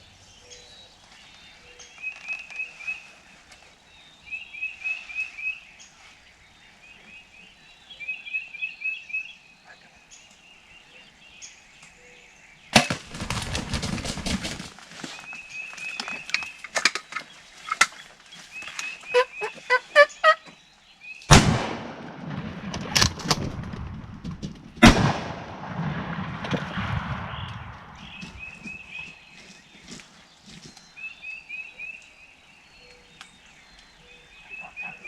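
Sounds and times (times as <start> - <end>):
sharp crack: 12.7 - 14.8, 21.2 - 29.0
shotgun shots: 12.8 - 14.4, 21.3 - 28.6
turkeys flapping wings: 12.8 - 20.4, 22.2 - 25.2
turkey calls: 15.7 - 20.6, 33.9 - 35.0.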